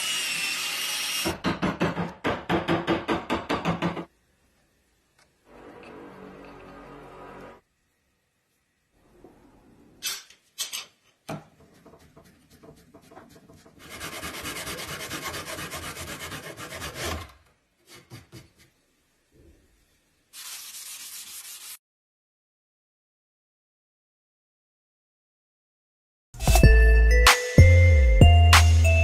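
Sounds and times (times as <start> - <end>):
wood being sanded: 11.6 - 17.3.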